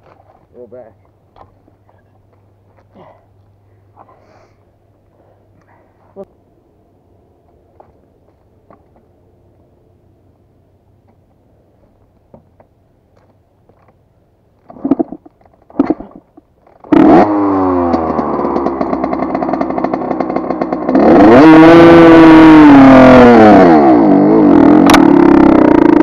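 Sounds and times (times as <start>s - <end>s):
dirt bike engine revving: 16.8s - 26.0s.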